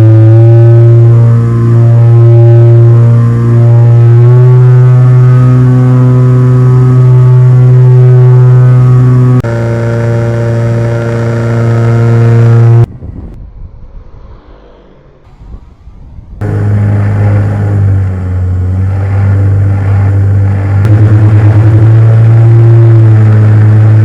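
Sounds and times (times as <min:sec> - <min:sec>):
model plane motors droning: 0:00.0 - 0:12.9, 0:16.4 - 0:24.0
quiet rushing sound: 0:11.7 - 0:24.0.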